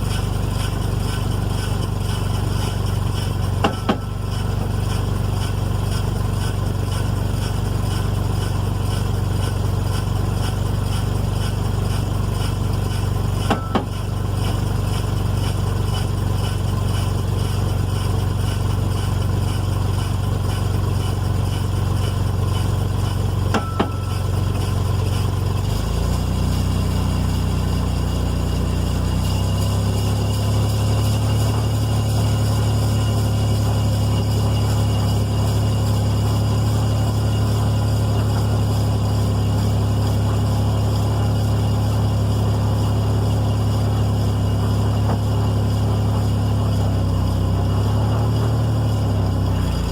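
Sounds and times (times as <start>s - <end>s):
truck engine running: 0.0s - 49.9s
driveline clunk: 2.2s - 4.6s, 13.4s - 14.6s, 23.5s - 24.7s.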